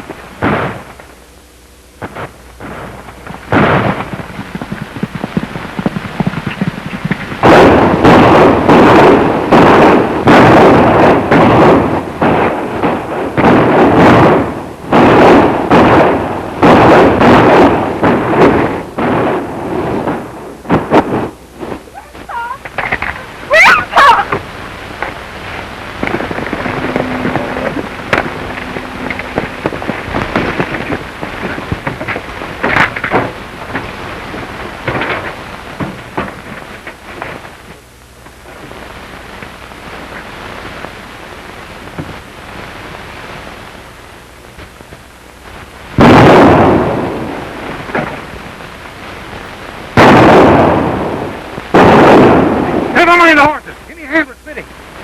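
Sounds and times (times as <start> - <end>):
gunshots: 0.0 - 1.1, 2.0 - 37.5, 46.0 - 48.4, 49.5 - 54.6.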